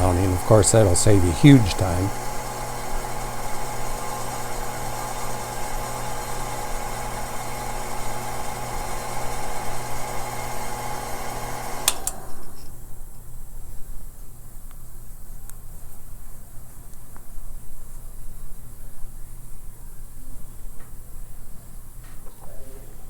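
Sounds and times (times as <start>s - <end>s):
machine motor humming: 0.0s - 12.6s.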